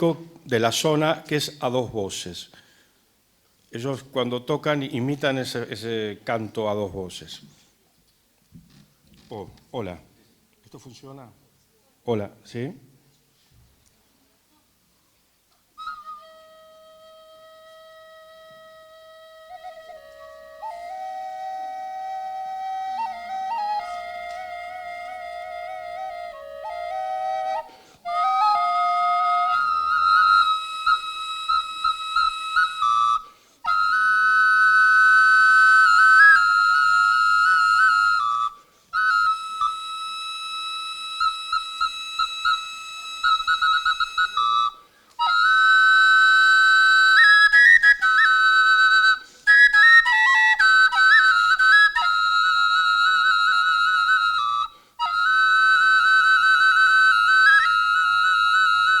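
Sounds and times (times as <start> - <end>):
double flute folk melody: 15.6 - 59.0.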